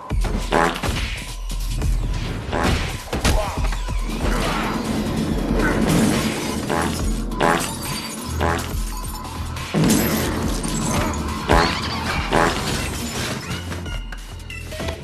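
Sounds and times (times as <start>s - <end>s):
action film music: 0.0s - 15.0s
crashes and impacts: 2.2s - 7.9s, 9.7s - 13.4s.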